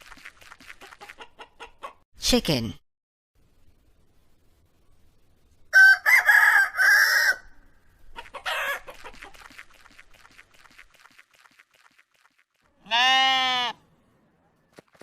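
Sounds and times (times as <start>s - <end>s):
chicken squawk and clucks: 0.8s - 2.0s, 5.7s - 9.6s
rooster crowing: 5.7s - 7.6s.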